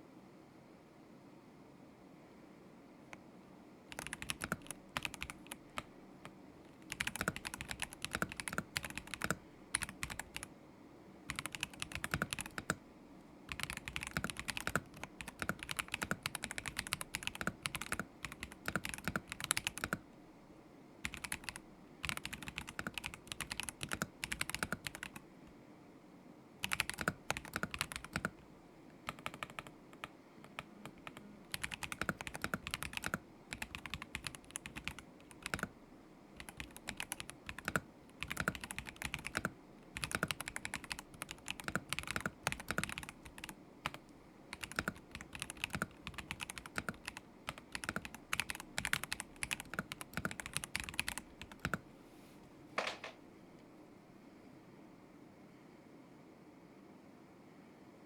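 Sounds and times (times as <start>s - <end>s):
mechanical keyboard typing: 3.9s - 5.9s, 6.8s - 10.5s, 11.3s - 12.8s, 13.5s - 20.0s, 21.0s - 25.2s, 26.6s - 28.4s, 29.1s - 35.7s, 36.4s - 51.8s.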